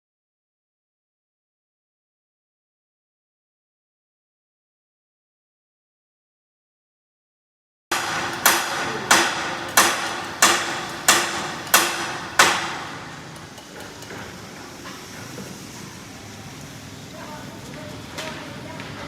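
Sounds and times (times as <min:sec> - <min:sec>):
hammer blows ringing: 0:07.9 - 0:13.4.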